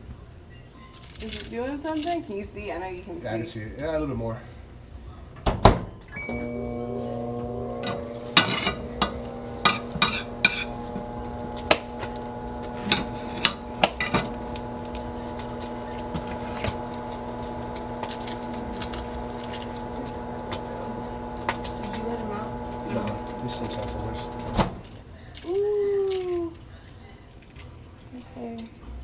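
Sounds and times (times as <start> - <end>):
microwave oven humming: 6.1 - 24.9
microwave click: 6.2 - 24.8.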